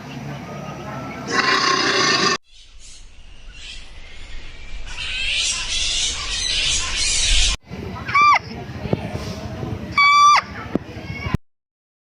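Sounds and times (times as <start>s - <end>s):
high animal call: 1.3s - 2.4s.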